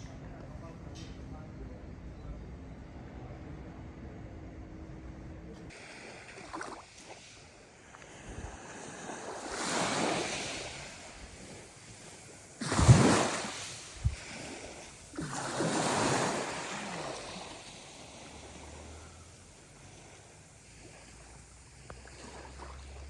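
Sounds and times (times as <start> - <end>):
waves washing on shore: 5.7 - 23.0.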